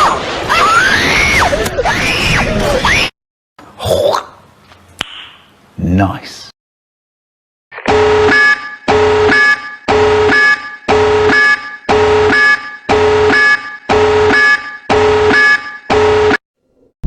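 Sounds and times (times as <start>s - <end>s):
harsh buzzing alarm tone: 7.9s - 16.4s.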